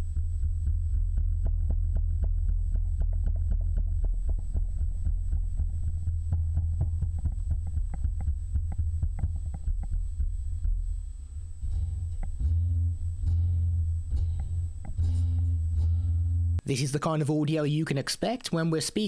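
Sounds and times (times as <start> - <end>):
steady low rumble: 0.0 - 16.6
rapid clicks and knocks: 1.2 - 10.0.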